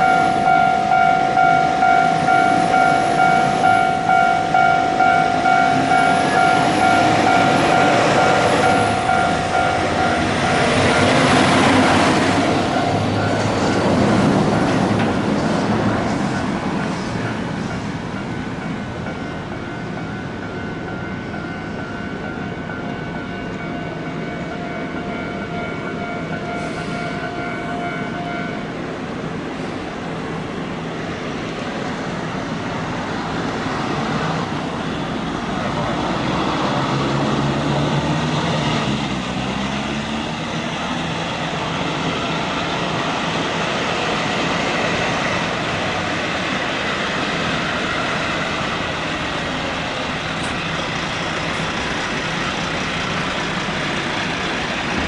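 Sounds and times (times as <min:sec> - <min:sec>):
steady traffic noise: 0:00.0 - 0:55.0
heavy vehicle passing: 0:33.8 - 0:42.0.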